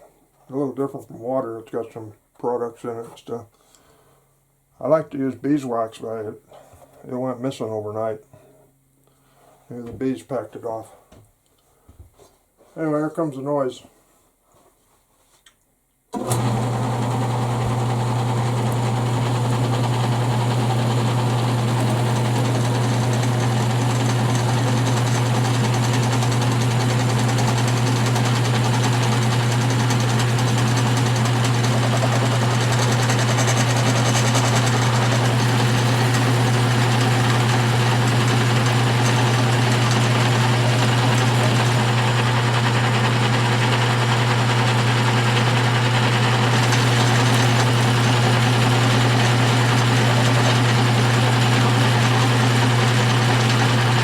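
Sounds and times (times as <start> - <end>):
electric motor humming: 16.2 - 54.0.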